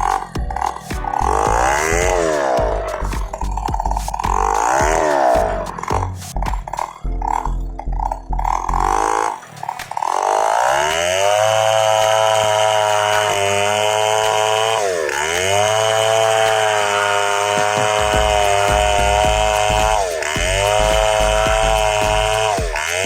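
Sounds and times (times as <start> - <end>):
low thumps: 0.0 - 8.6, 17.8 - 22.8
chainsaw revving: 10.0 - 23.0.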